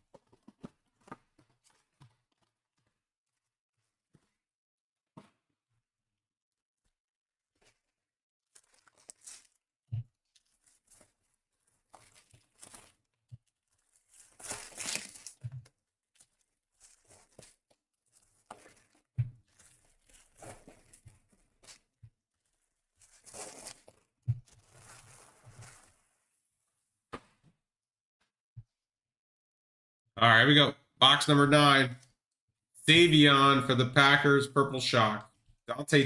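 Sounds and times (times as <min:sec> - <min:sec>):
wrapper tearing and crinkling: 0:08.5 - 0:09.6, 0:10.2 - 0:15.4, 0:16.2 - 0:21.8, 0:23.0 - 0:26.0.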